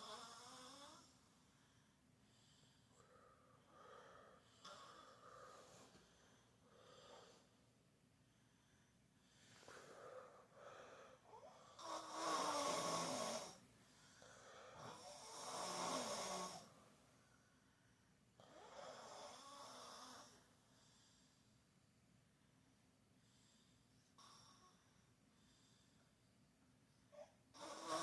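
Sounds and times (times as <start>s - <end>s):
child snoring: 0.0s - 1.1s, 4.2s - 5.7s, 11.2s - 13.6s, 14.3s - 16.7s, 18.4s - 20.4s, 24.2s - 24.9s, 27.1s - 28.0s.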